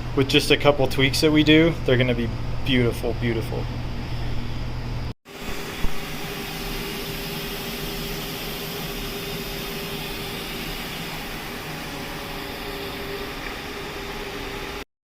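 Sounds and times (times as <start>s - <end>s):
mechanical whirring hum: 0.0s - 14.8s.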